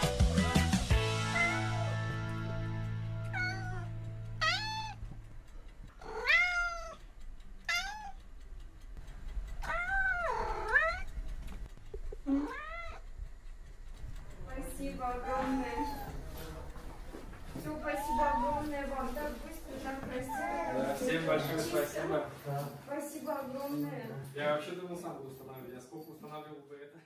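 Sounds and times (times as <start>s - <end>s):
held music chord: 0.0s - 4.4s
cat meowing: 1.2s - 2.1s, 3.3s - 5.0s, 5.9s - 8.2s, 9.6s - 11.2s, 12.3s - 13.1s, 15.0s - 16.8s, 17.6s - 21.3s.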